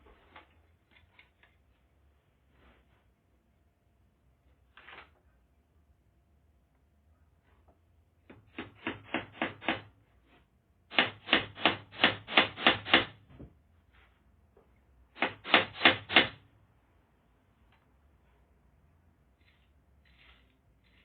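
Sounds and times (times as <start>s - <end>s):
hammer driving nails: 8.3s - 9.9s, 10.9s - 13.2s, 15.2s - 16.4s.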